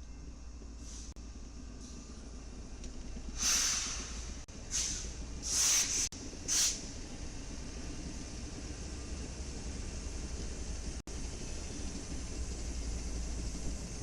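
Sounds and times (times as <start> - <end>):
steady low rumble: 0.0 - 14.0
air brake hissing: 0.8 - 1.2, 3.3 - 6.9.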